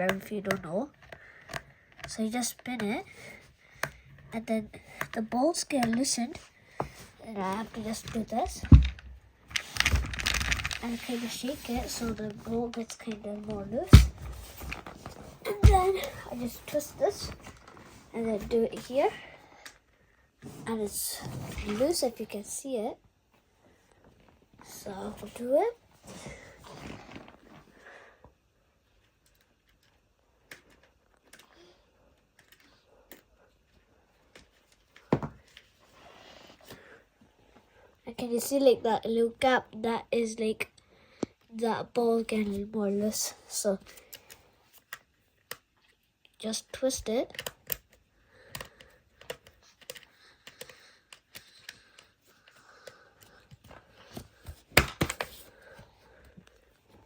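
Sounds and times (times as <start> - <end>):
screwdriver clicks and taps: 47.3 - 51.8.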